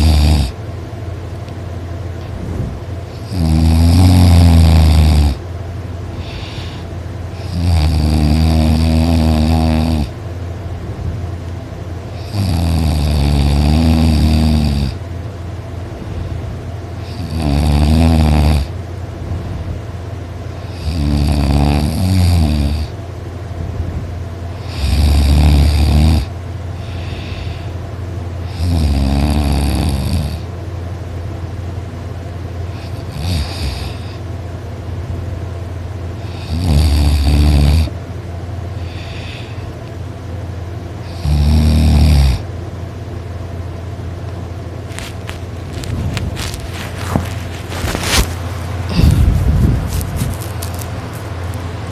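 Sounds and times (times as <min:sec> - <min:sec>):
person snoring: 0:00.0 - 0:00.6, 0:03.1 - 0:05.4, 0:06.2 - 0:10.1, 0:12.2 - 0:15.0, 0:17.0 - 0:18.7, 0:20.6 - 0:22.9, 0:24.6 - 0:27.8, 0:28.4 - 0:30.4, 0:32.7 - 0:34.2, 0:36.2 - 0:37.9, 0:38.8 - 0:39.7, 0:41.0 - 0:42.5, 0:48.9 - 0:49.7
steady low hum: 0:00.0 - 0:51.9.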